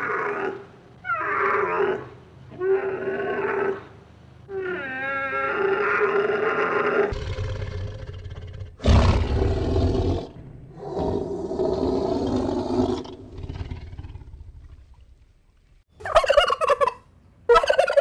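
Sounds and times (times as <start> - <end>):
large animal calling: 16.0 - 18.0.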